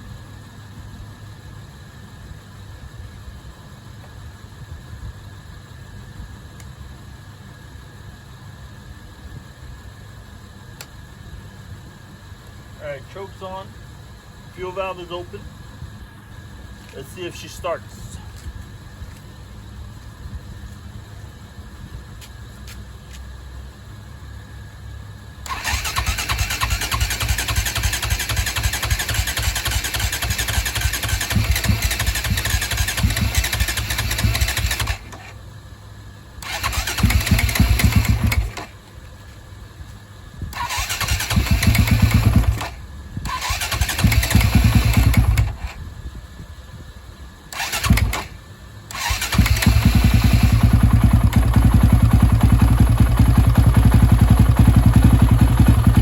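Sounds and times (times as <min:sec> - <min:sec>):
motorcycle engine cranking: 0:25.5 - 0:35.3, 0:36.4 - 0:38.8, 0:40.6 - 0:45.7, 0:47.5 - 0:56.0.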